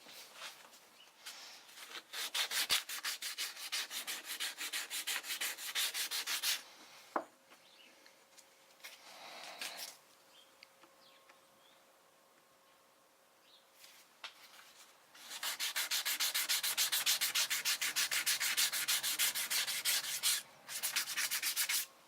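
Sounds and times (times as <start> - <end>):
hand sanding wood: 2.1 - 6.6, 15.2 - 21.9.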